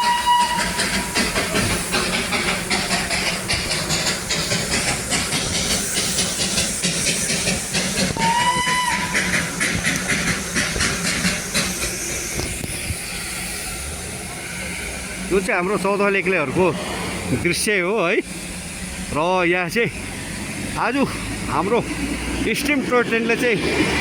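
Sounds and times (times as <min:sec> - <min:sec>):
train whistle blast: 0:00.0 - 0:01.2, 0:08.1 - 0:09.3
steam hissing: 0:00.0 - 0:24.0
steam locomotive puffing: 0:00.0 - 0:24.0.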